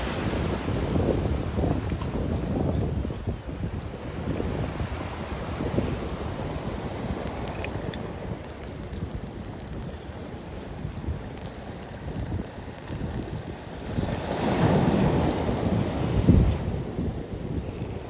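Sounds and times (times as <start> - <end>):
wind rumbling on microphone: 0.0 - 18.0.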